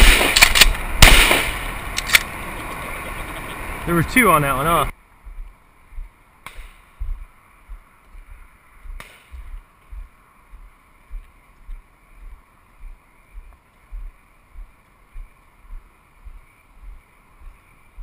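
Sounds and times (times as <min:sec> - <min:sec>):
shotgun shot: 0:00.0 - 0:01.7, 0:09.0 - 0:09.4
low thumps on microphone: 0:05.3 - 0:15.3.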